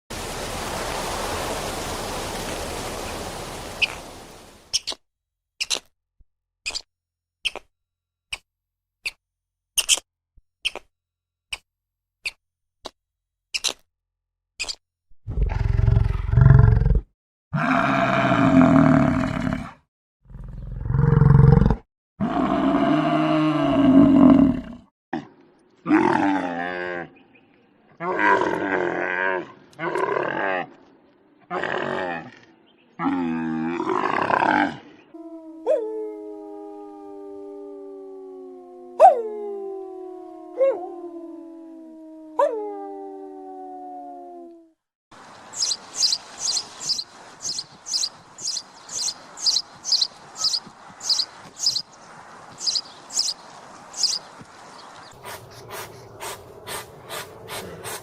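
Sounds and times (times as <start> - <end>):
large animal roaring: 15.3 - 24.9, 25.8 - 27.2, 28.0 - 30.8, 31.5 - 34.8, 55.2 - 58.0.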